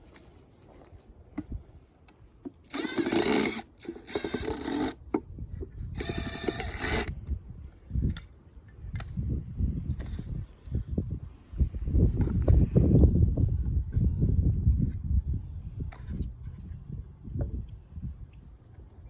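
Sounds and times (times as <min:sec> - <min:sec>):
power drill bursts: 0:02.7 - 0:05.0, 0:06.0 - 0:07.2.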